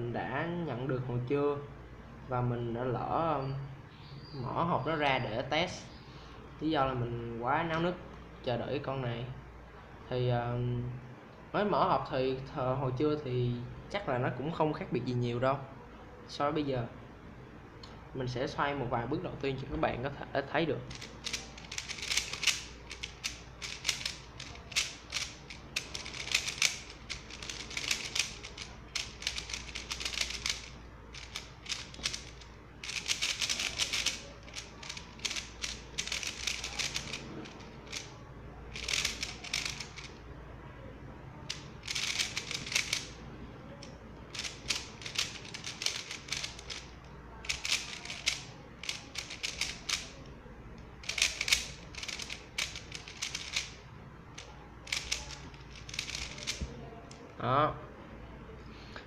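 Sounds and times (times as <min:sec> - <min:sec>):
puzzle cube clacking: 0:20.8 - 0:40.2, 0:41.5 - 0:50.3, 0:50.9 - 0:57.2.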